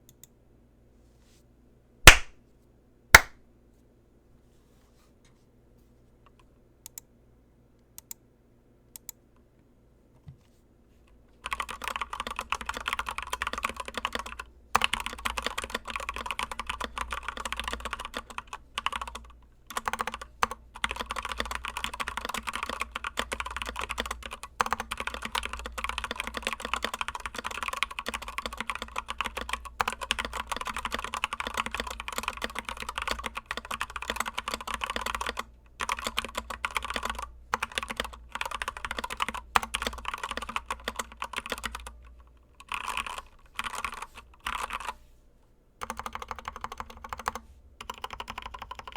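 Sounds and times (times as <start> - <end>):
mechanical keyboard typing: 11.4 - 45.0, 45.8 - 48.9.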